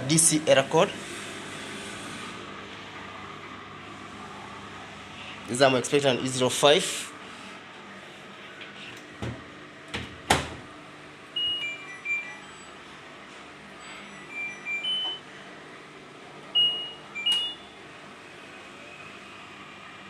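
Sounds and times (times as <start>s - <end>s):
short electronic beeps: 11.4s - 12.7s, 13.8s - 15.2s, 16.6s - 17.7s.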